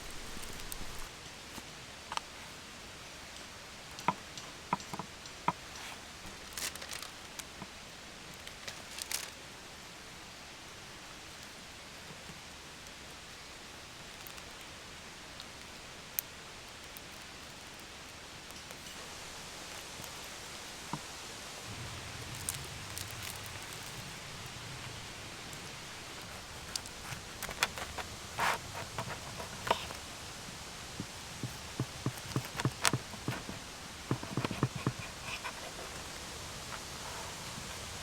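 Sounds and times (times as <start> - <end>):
outdoor background hiss: 0.0 - 38.0
light clicks and taps: 31.0 - 36.8.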